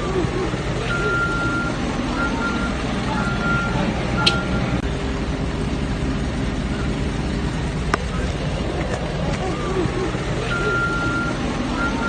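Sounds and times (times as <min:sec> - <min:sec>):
steady rumbling noise: 0:00.0 - 0:12.0
short electronic beeps: 0:00.9 - 0:04.7.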